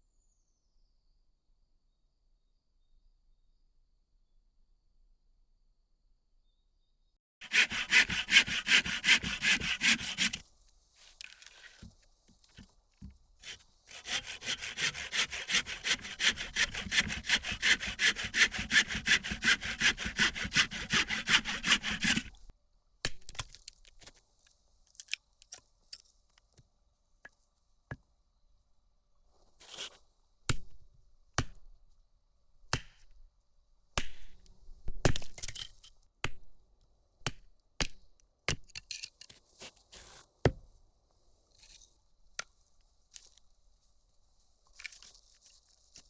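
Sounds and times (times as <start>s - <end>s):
hand saw cutting wood: 7.4s - 10.4s, 13.4s - 22.4s.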